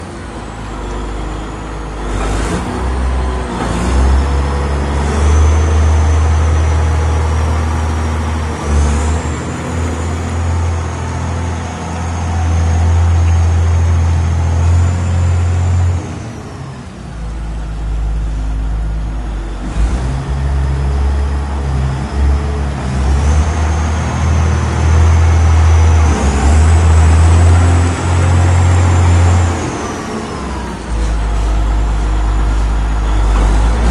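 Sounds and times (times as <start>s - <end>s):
diesel engine drone: 0.0s - 33.9s.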